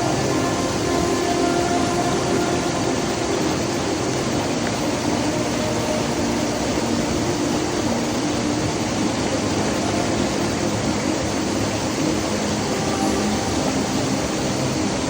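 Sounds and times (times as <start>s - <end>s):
rushing water: 0.0s - 15.0s.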